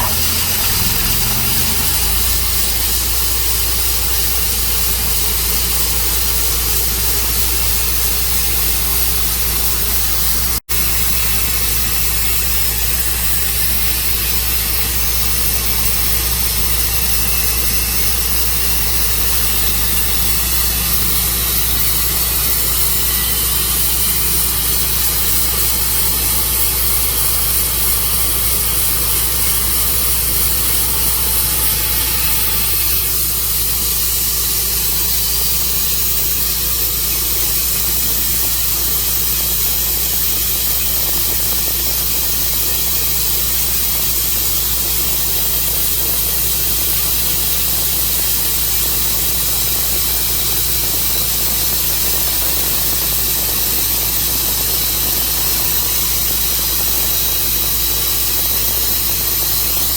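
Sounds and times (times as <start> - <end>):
low engine hum: 0.0 - 34.6
saw blade cutting wood: 0.0 - 41.6.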